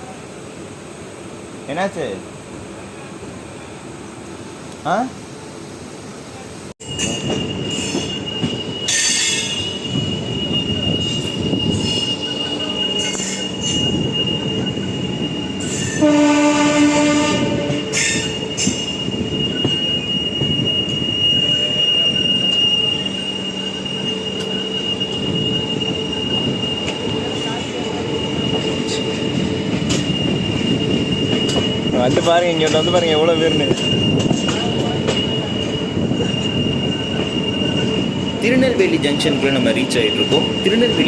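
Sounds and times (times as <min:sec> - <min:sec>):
train running on rails: 0:00.0 - 0:41.0
high-pitched wheel squeal: 0:06.8 - 0:41.0
train horn: 0:15.9 - 0:18.7
train clatter: 0:24.2 - 0:41.0.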